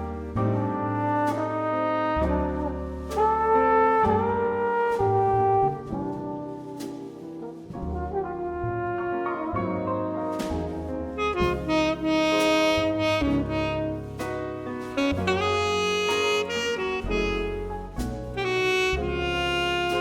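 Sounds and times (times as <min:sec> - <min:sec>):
double bass: 0:00.0 - 0:20.0
piano: 0:00.0 - 0:20.0
saxophone melody: 0:11.2 - 0:20.0.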